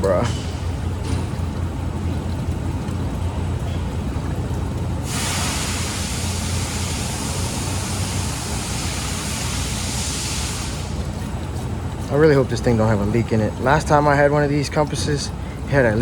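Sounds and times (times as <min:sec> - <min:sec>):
steady low hum: 0:00.0 - 0:16.0
hiss of flowing fluid: 0:05.0 - 0:11.1.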